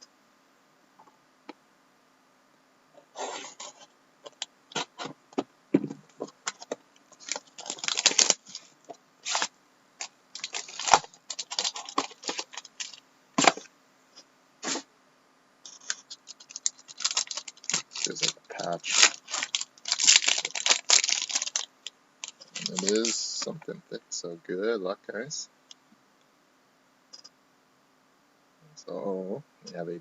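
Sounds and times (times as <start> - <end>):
plastic wrapping crinkling and tearing: 6.2 - 13.7, 15.7 - 23.4.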